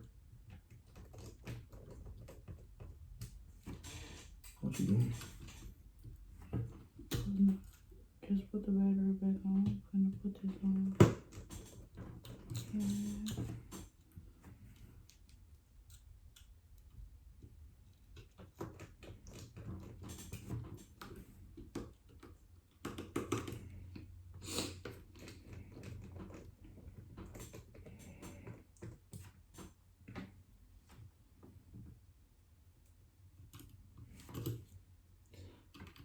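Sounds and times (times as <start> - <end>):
faint low hum: 4.4 - 22.8.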